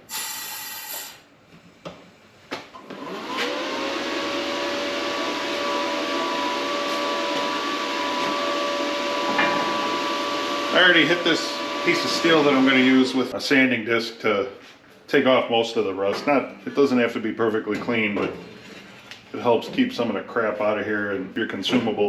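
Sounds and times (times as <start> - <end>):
electric motor whining: 2.9 - 13.2.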